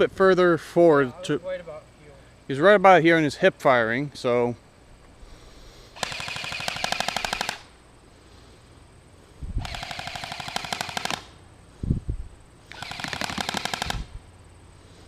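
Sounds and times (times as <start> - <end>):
airsoft rifle firing full auto: 6.0 - 7.7, 9.6 - 11.4, 12.7 - 14.2.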